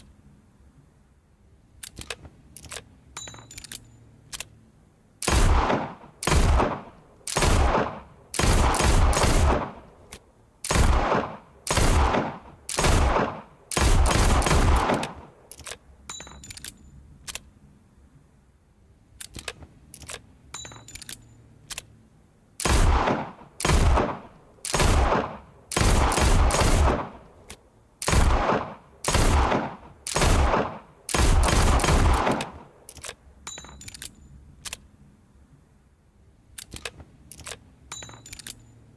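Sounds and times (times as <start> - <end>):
faint metallic clicks: 1.8 - 4.6, 15.0 - 17.6, 19.2 - 22.0, 32.3 - 34.9, 36.5 - 38.9
revolver gunshots: 5.2 - 9.9, 10.6 - 15.4, 22.6 - 27.3, 28.0 - 32.8.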